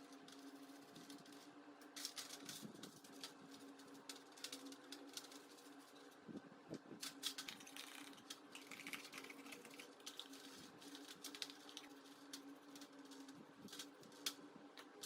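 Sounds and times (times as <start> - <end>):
steady low hum: 0.0 - 15.0
small hard parts clicking: 7.0 - 15.0.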